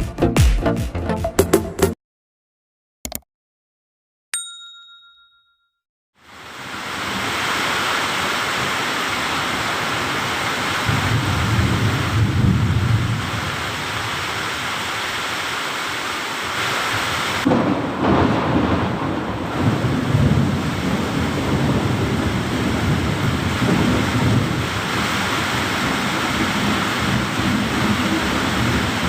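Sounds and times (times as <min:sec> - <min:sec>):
heavy rain falling: 0:06.2 - 0:29.0
thunder rumbling: 0:10.8 - 0:14.5, 0:17.4 - 0:29.0.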